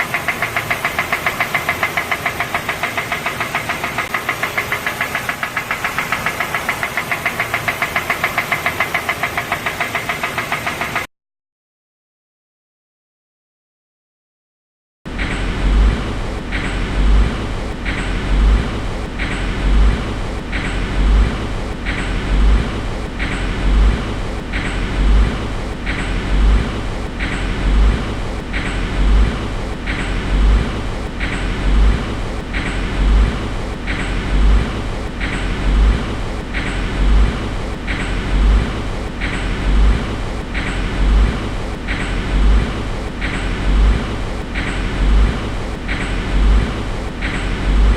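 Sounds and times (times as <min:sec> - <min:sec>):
low thump and click: 0:15.1 - 0:47.9.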